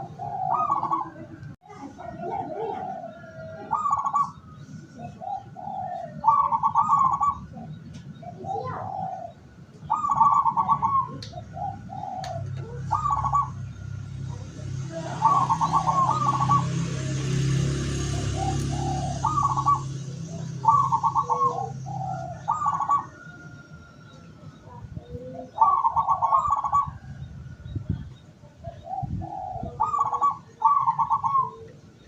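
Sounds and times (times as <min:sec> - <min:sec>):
dove cooing: 0:00.0 - 0:27.3, 0:27.9 - 0:32.0
small birds chirping: 0:00.0 - 0:32.0.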